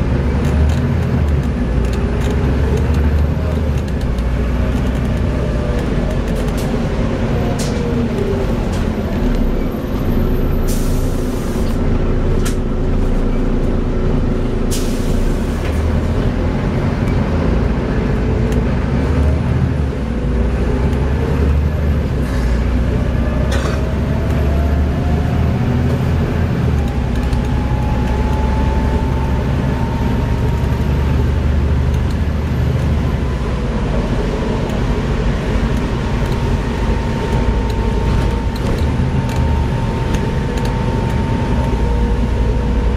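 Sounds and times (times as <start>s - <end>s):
bus diesel engine running: 0.0s - 42.9s
short air hisses: 14.7s - 15.5s
gearbox whine: 34.6s - 42.9s.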